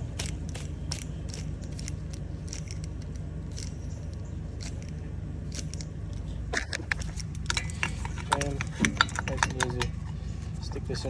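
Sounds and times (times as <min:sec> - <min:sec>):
sharp tool clicks: 0:00.0 - 0:10.0
steady low hum: 0:00.0 - 0:11.0.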